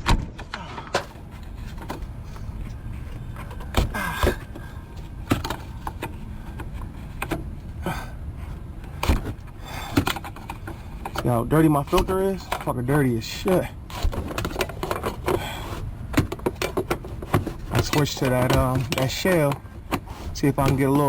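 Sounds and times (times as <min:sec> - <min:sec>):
steady low rumble: 0:01.1 - 0:14.1.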